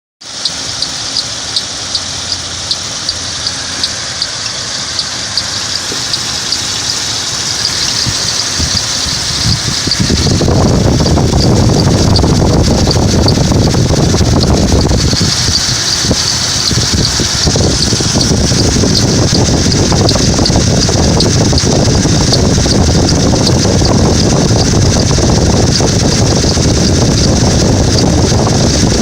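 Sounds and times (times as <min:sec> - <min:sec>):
car engine running: 0:00.2 - 0:29.0
high-pitched engine chirp: 0:00.2 - 0:29.0
rushing rumbling noise: 0:00.2 - 0:29.0.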